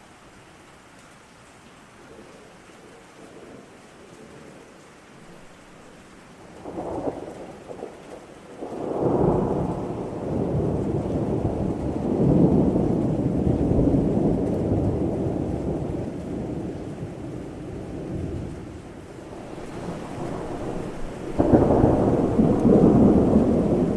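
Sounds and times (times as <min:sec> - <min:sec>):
steady rain: 0:00.0 - 0:23.9
thunder rumbling: 0:06.5 - 0:23.9.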